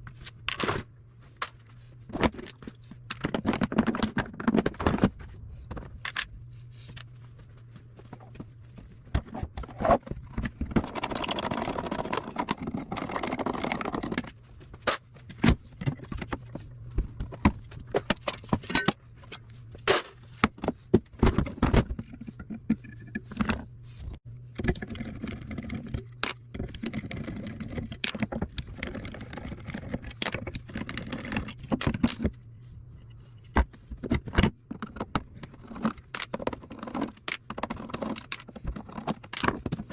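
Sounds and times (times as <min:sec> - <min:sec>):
low steady hum: 0:00.0 - 0:39.9
metal parts and tools clinking: 0:17.9 - 0:20.7.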